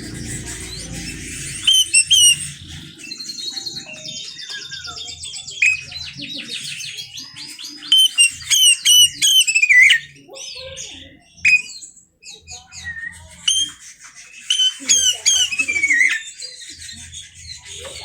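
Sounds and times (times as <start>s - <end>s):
bird singing whistled notes: 0.0s - 10.2s, 11.2s - 16.7s.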